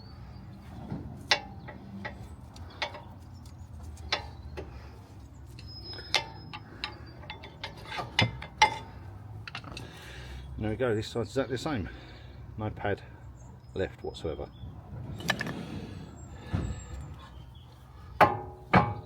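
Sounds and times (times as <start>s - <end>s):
metal tools clinking: 1.2s - 4.7s, 5.4s - 10.0s.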